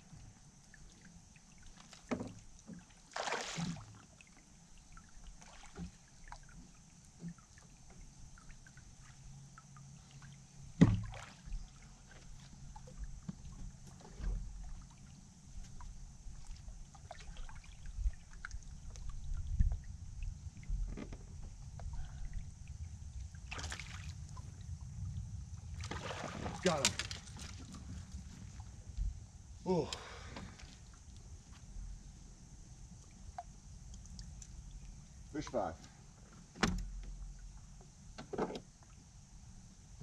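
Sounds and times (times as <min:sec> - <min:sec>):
low rumble: 0:18.5 - 0:32.4.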